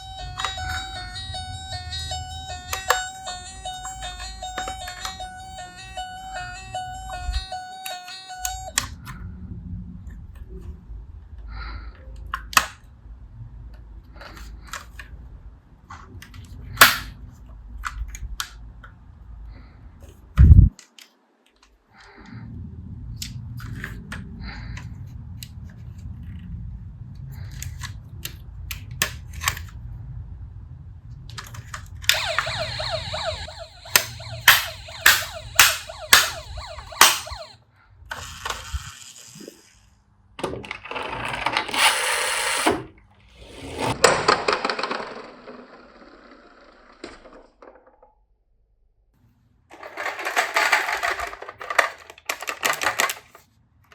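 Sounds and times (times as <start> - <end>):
toy cars rolling and clattering: 15.9 - 17.2, 31.3 - 37.5, 38.1 - 42.8, 43.4 - 48.1, 49.7 - 53.9
sharp clicks and knocks: 32.1 - 37.5.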